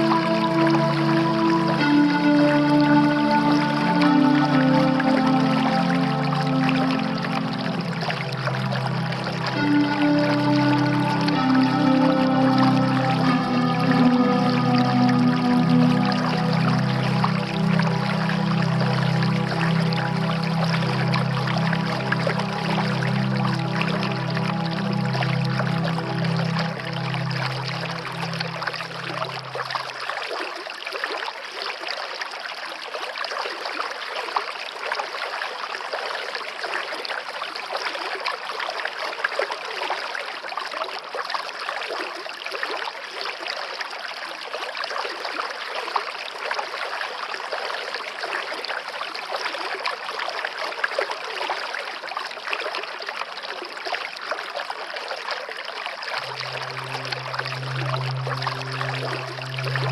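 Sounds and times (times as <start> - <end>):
low sustained music notes: 0.0 - 30.2, 56.1 - 59.9
waterfall rushing: 56.2 - 59.9.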